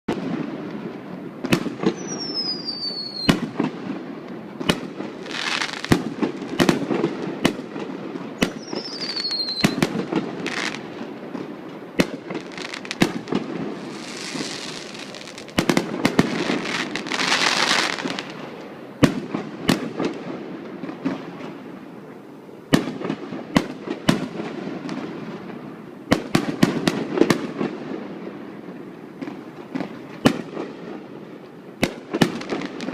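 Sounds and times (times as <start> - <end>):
fireworks bangs: 0.1 - 21.8, 22.7 - 32.9
fireworks crackle: 0.1 - 21.9, 22.7 - 32.9
fireworks whistles falling in pitch: 1.4 - 3.6, 8.4 - 10.8.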